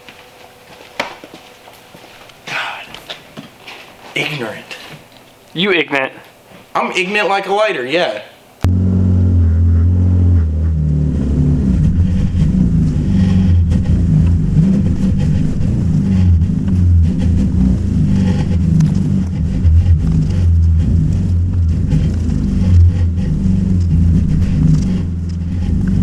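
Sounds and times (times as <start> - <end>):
car engine revving: 8.6 - 26.0.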